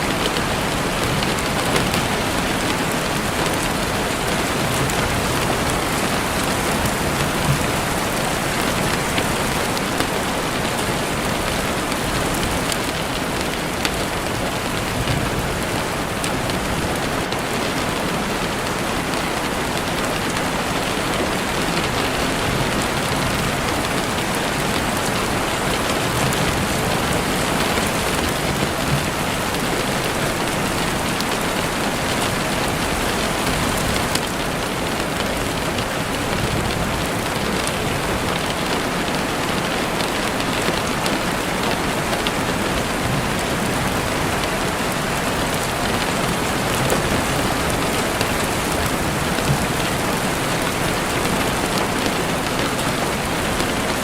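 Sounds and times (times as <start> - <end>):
rain falling through trees: 0.0 - 54.0.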